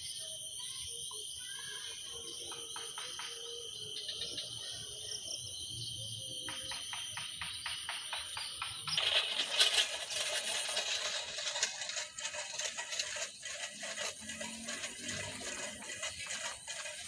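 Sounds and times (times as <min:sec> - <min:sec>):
tin cans rattling with stones: 0:07.8 - 0:17.0.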